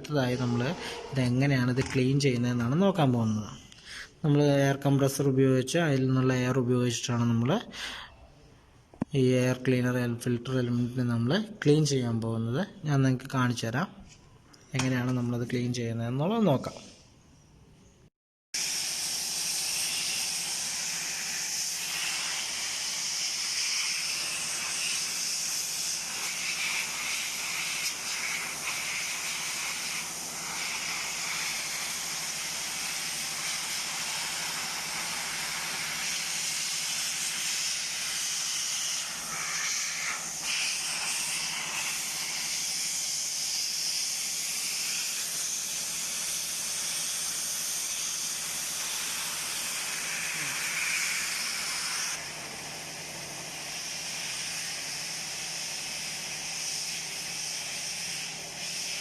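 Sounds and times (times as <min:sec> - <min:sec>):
air blow gun hissing: 0:00.0 - 0:02.0, 0:18.6 - 0:59.0.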